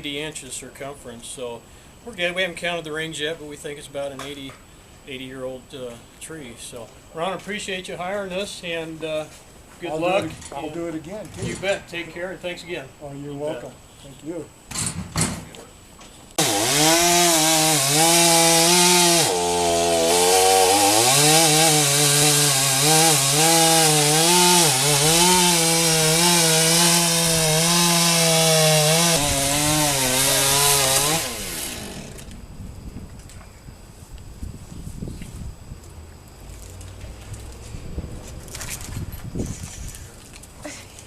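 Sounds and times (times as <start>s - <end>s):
chainsaw cutting wood: 16.4s - 32.3s.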